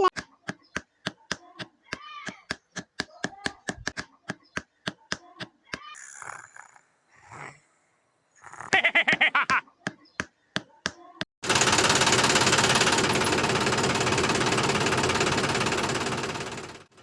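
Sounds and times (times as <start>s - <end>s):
small motor rattling: 11.4s - 17.0s.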